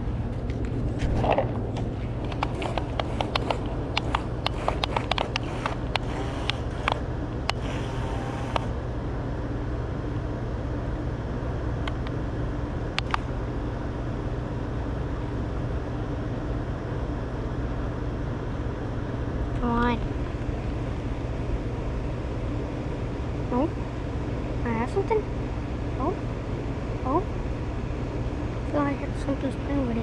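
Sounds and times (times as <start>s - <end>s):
sharp clicks and taps: 2.2s - 7.6s
toy boat motor humming: 2.4s - 8.8s.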